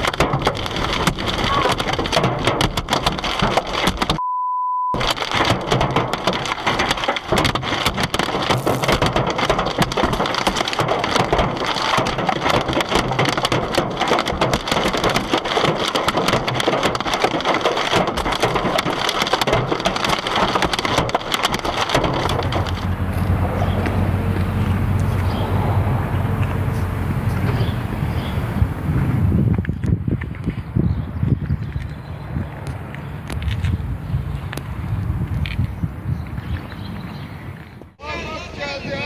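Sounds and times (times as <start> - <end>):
hailstones pelting a car: 0.0 - 4.2, 5.0 - 29.7
short steady beep tone: 4.2 - 5.0.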